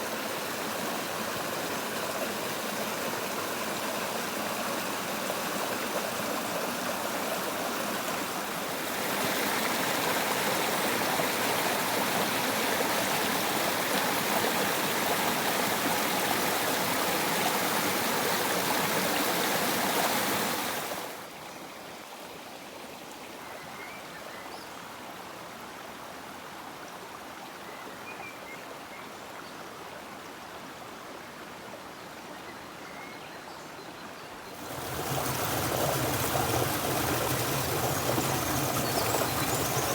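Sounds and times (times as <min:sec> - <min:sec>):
running water rushing: 0:00.0 - 0:21.6, 0:34.4 - 0:39.9.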